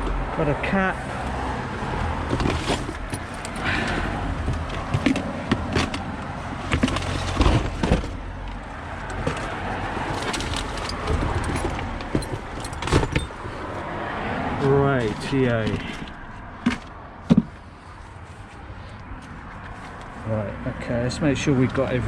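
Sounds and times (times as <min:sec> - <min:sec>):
low vehicle hum: 0:00.0 - 0:22.0
tools and parts rattling: 0:02.3 - 0:06.1, 0:09.1 - 0:13.6, 0:15.0 - 0:16.9.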